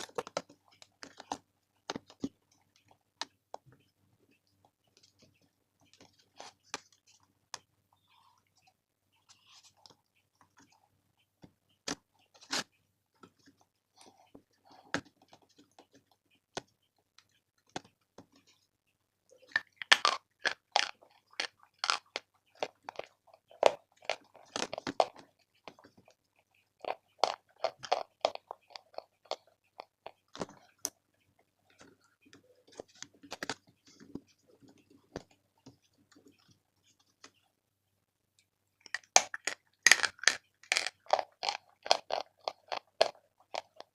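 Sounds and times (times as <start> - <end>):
chalk crunching while chewed: 19.5 - 30.9, 38.9 - 43.9.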